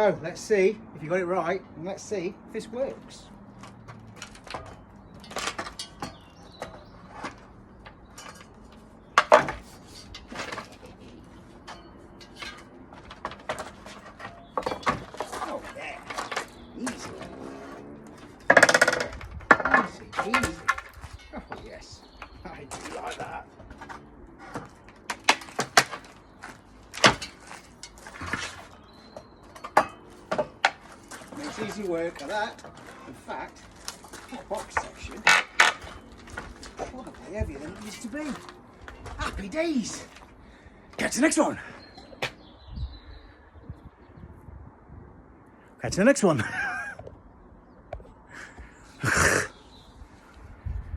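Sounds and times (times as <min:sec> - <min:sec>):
wood cracking: 0:03.6 - 0:40.3.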